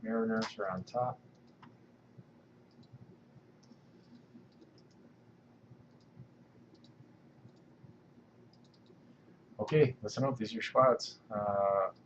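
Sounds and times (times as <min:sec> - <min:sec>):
mouse and keyboard clicking: 0:03.6 - 0:05.0, 0:06.7 - 0:07.7, 0:08.5 - 0:09.0.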